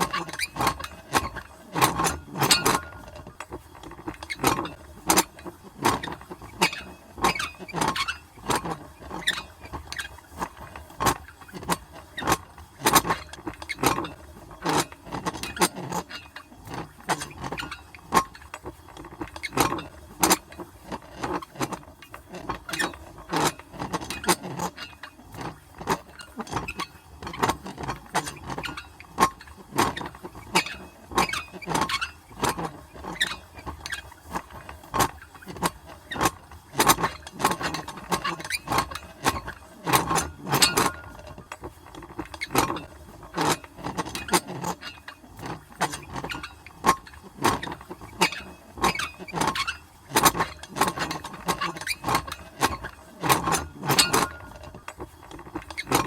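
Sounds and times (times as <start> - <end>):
metal crank wheel clanking: 0.1 - 3.2, 36.8 - 41.3.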